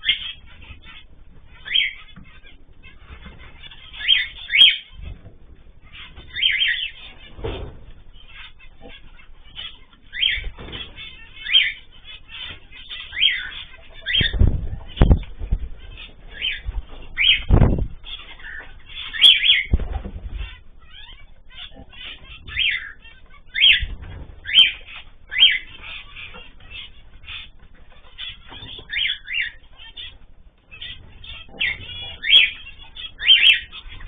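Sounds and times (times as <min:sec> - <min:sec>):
small birds chirping: 0:00.0 - 0:34.0
wing flapping: 0:00.0 - 0:34.0
heavy low thumps: 0:14.2 - 0:18.0.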